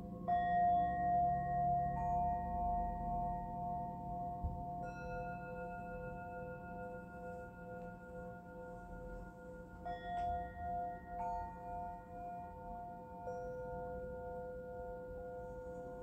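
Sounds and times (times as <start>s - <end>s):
singing bowls ringing: 0.0s - 16.0s.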